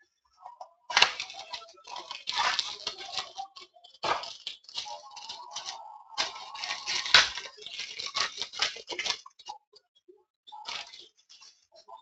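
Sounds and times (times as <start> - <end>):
long scraping tear: 0.9 - 9.2
packaging crinkling and tearing: 0.9 - 9.5, 10.6 - 11.5
quick clicks and rustles: 0.9 - 9.6, 10.6 - 11.8.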